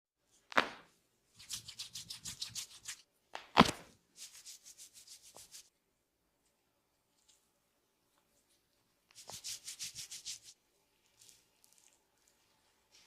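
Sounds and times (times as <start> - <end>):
hand slapping skin: 0.5 - 5.6
hands rubbing head: 1.4 - 3.0, 4.2 - 5.7, 9.1 - 10.6.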